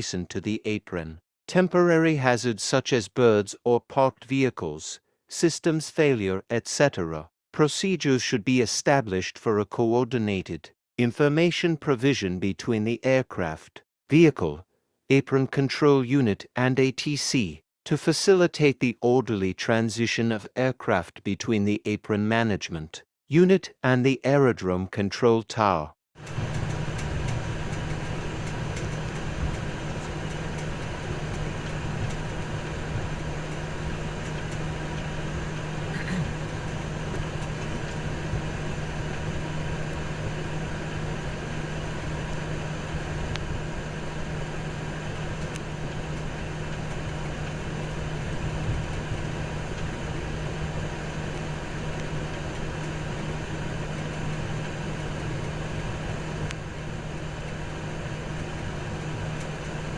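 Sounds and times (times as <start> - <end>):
airport ground machinery drone: 26.2 - 59.9.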